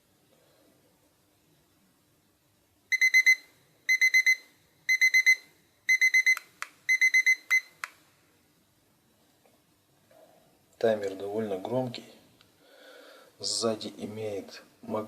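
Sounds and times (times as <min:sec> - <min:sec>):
kitchen timer beeping: 0:02.9 - 0:07.8.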